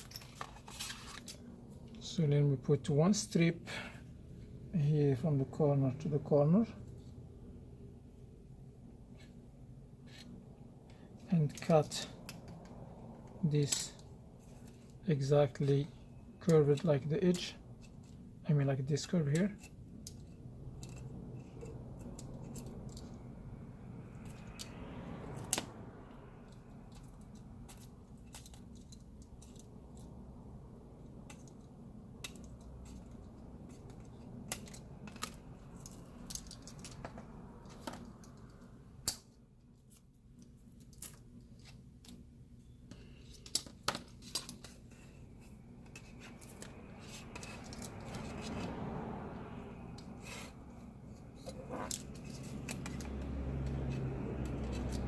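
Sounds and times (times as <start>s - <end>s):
small parts clicking and tapping: 19.0s - 23.3s, 24.0s - 25.7s, 26.4s - 30.2s, 31.0s - 42.2s, 42.9s - 48.7s, 50.0s - 55.0s.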